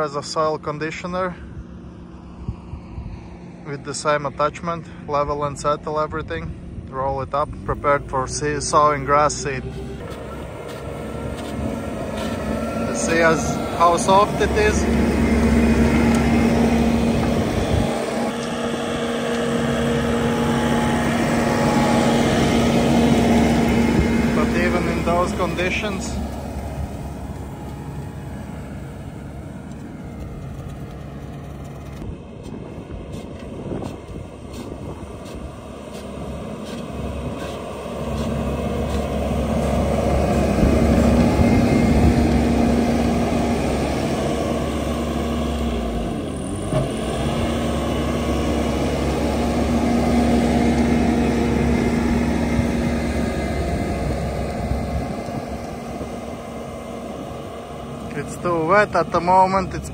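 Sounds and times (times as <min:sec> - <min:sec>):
skid-steer engine drone: 0:00.0 - 0:59.9.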